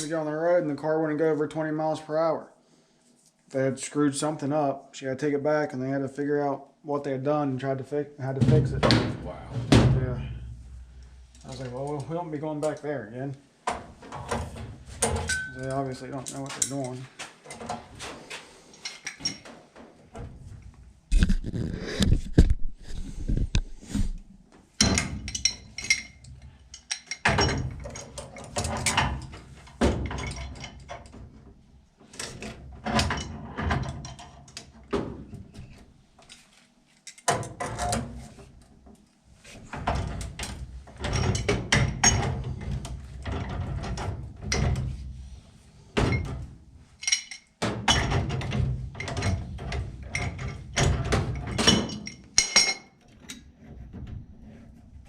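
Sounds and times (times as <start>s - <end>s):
heavy thumps: 8.3s - 10.9s
hard objects knocking and rattling: 24.8s - 31.4s, 39.6s - 45.0s, 46.0s - 54.7s.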